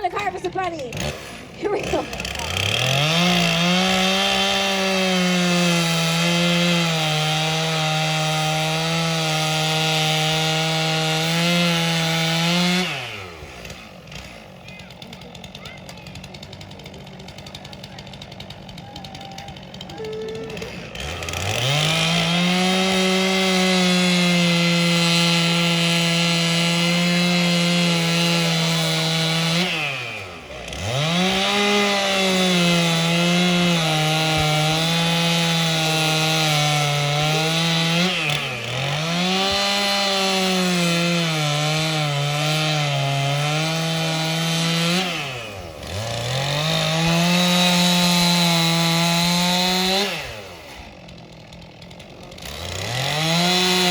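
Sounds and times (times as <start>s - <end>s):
chainsaw cutting wood: 0.0s - 53.9s.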